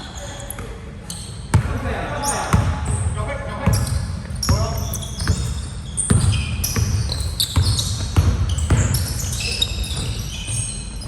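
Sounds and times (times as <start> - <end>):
shoes squeaking on floor: 0.0 - 11.0
basketball dribbling thumps: 2.5 - 10.6.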